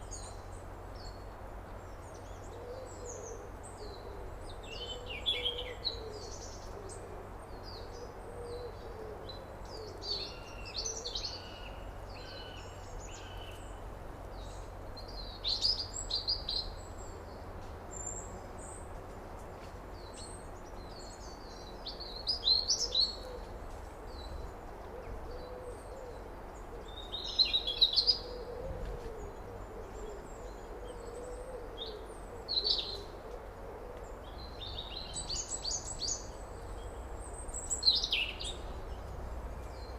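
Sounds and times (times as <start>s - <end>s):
small birds chirping: 34.0s - 39.9s.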